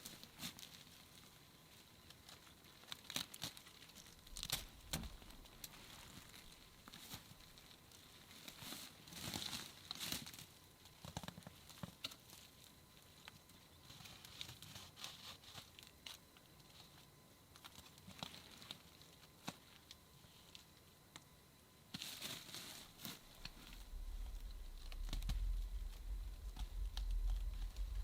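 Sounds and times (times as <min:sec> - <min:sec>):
crinkling rustles: 0:00.0 - 0:21.3, 0:21.9 - 0:28.0
low rumble: 0:23.2 - 0:28.0.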